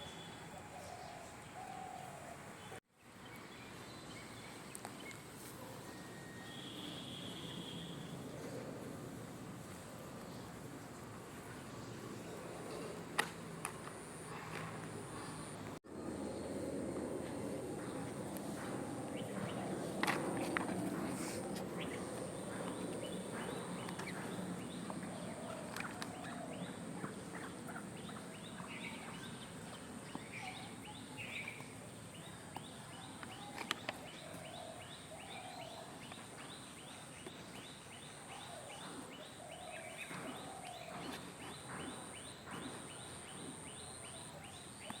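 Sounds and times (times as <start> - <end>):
birds wavering calls: 17.8 - 45.0.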